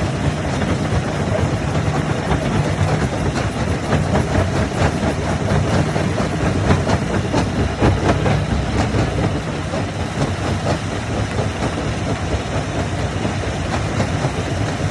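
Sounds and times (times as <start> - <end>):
diesel machinery running: 0.0 - 14.9.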